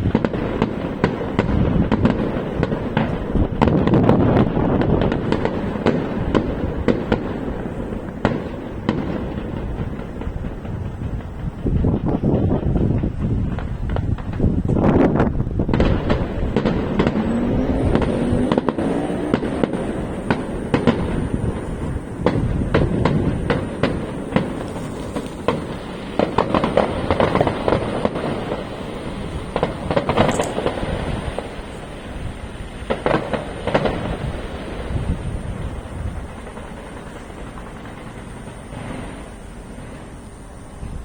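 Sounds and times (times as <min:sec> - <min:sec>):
fireworks bangs: 0:00.0 - 0:41.0
fireworks crackling: 0:00.0 - 0:41.0
rising whistle: 0:16.5 - 0:22.6.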